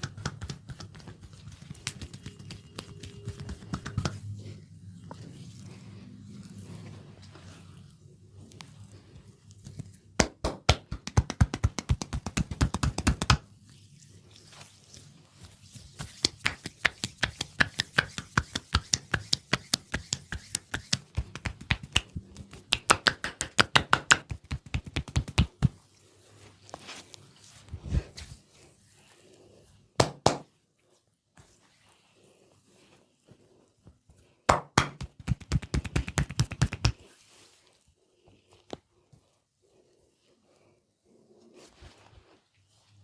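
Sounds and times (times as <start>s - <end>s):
hands tapping on head: 0.0s - 4.2s, 10.2s - 13.4s, 16.0s - 25.8s, 30.0s - 30.4s, 34.5s - 37.0s.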